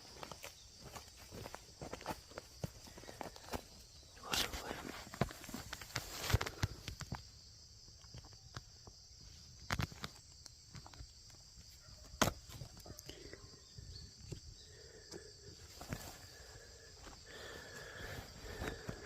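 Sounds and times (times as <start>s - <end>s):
night insects chirring: 0.0s - 19.0s
faint crackles: 2.8s - 7.4s.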